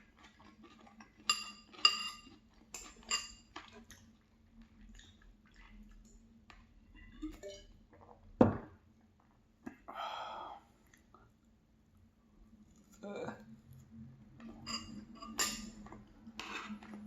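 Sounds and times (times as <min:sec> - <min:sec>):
quiet chewing: 0:00.0 - 0:06.7, 0:10.8 - 0:11.6
cutlery clinking on dishes: 0:01.2 - 0:03.5, 0:14.4 - 0:16.8.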